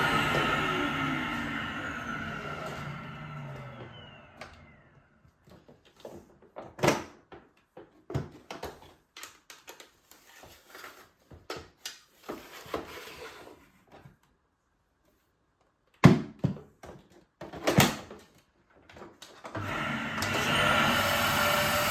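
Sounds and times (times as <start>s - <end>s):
vacuum cleaner motor winding down: 0.0s - 5.3s, 19.6s - 21.9s.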